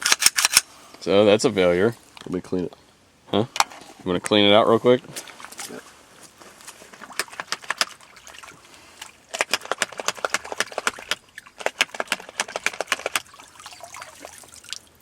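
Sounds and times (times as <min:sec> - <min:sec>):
small metal clicks: 0:00.0 - 0:00.7
water spattering: 0:06.7 - 0:15.0.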